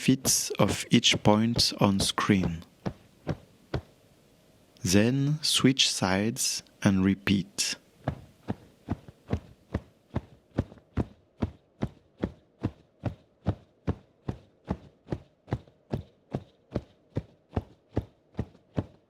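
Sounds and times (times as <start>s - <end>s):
hand tapping on chest: 0.0s - 4.0s, 8.0s - 16.1s.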